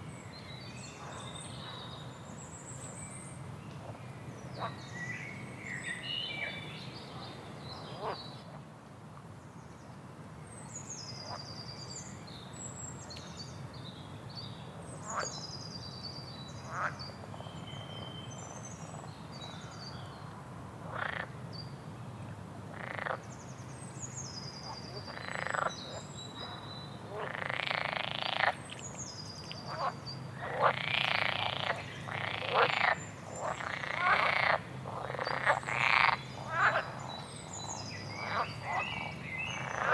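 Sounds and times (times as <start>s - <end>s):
songbird singing: 0.0s - 8.4s, 22.8s - 39.9s.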